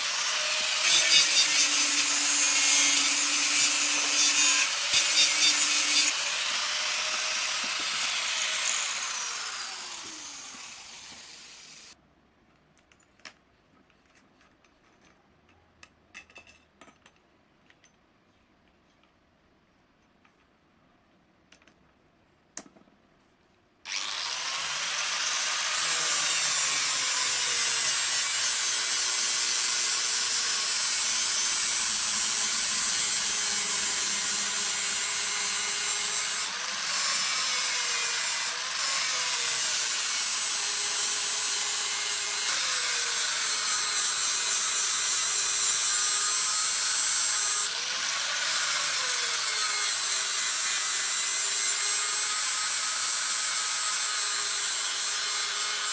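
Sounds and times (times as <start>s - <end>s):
electric grinder on steel: 0.0s - 12.0s, 23.9s - 55.9s.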